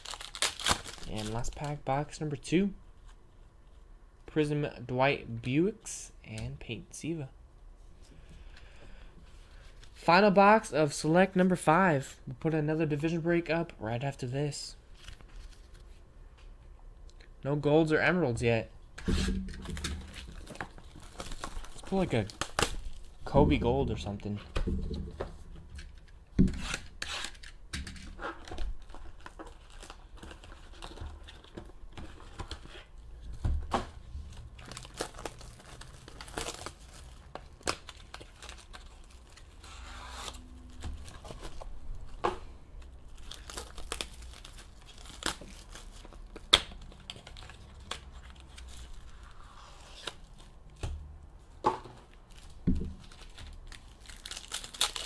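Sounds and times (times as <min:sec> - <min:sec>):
wrappers tearing and crinkling: 0:00.0 - 0:02.0, 0:19.2 - 0:23.2, 0:28.2 - 0:31.6, 0:34.3 - 0:42.1, 0:43.0 - 0:50.6, 0:52.2 - 0:55.0.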